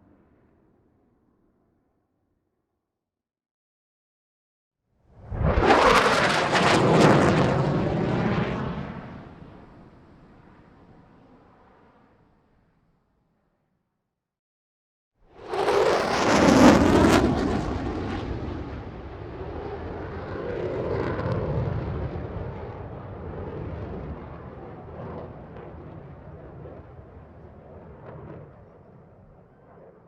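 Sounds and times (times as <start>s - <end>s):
airplane flying past: 5.2s - 10.0s, 15.4s - 30.0s.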